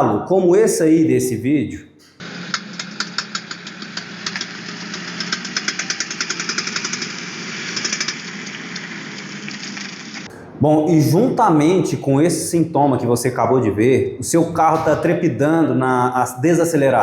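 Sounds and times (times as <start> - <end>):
car engine running: 2.2 - 10.2.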